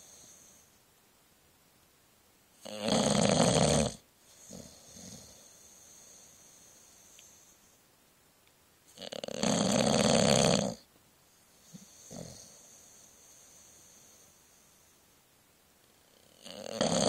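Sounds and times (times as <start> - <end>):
dog snoring: 2.6 - 7.5, 8.9 - 10.9, 11.6 - 14.6, 16.0 - 17.0.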